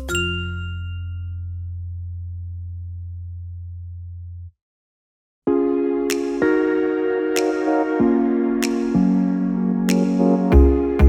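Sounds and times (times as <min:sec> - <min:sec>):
synthesizer chords: 0:05.5 - 0:11.0.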